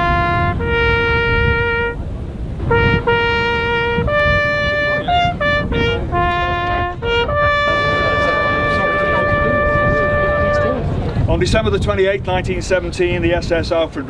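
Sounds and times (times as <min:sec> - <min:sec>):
solo trumpet slow melody: 0:00.0 - 0:11.0.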